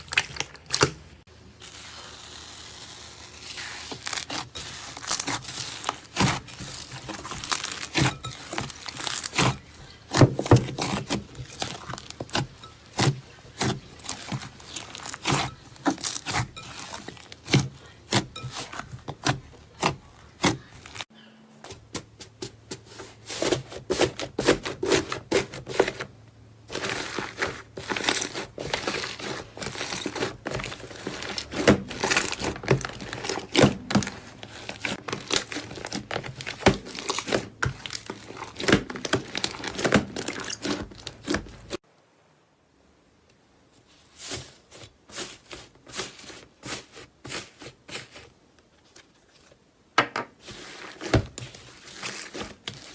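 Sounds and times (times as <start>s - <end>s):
slime crackling and popping: 0.0s - 18.5s, 26.7s - 41.8s.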